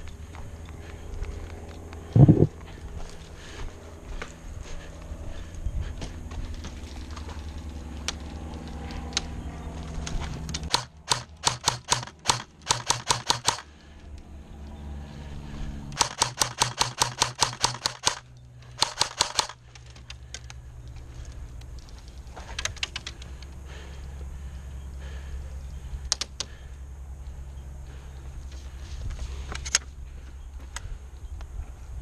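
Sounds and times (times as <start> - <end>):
airsoft gun firing: 10.7 - 13.7, 16.0 - 18.2, 18.8 - 19.6.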